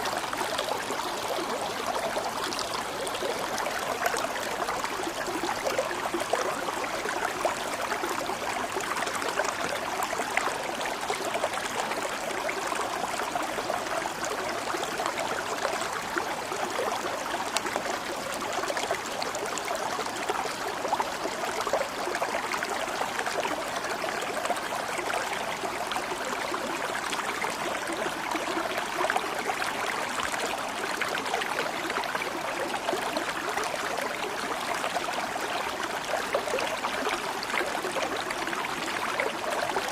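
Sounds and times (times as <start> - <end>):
water flowing: 0.0 - 15.1.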